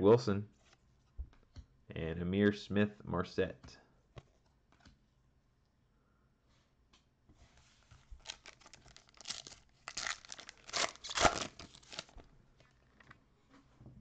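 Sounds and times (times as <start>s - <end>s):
foil pack tearing and crinkling: 8.2s - 12.2s.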